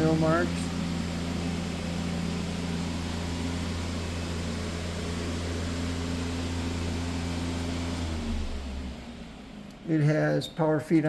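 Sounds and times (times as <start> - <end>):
milling machine motor hum: 0.0 - 9.8.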